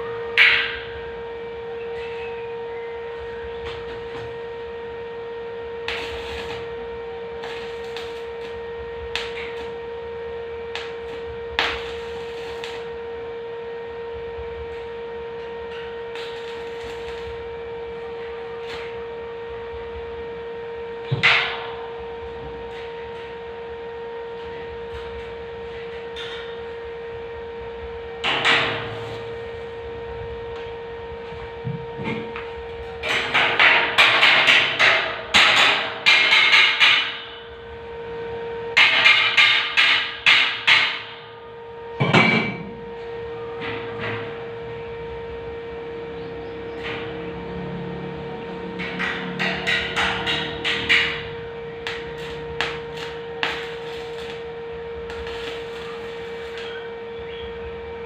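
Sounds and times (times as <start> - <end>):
steady hum: 0.0 - 58.0
hammer striking steel: 0.4 - 0.9, 21.1 - 21.9, 28.2 - 29.3, 33.0 - 37.4, 38.8 - 41.3, 48.7 - 54.4.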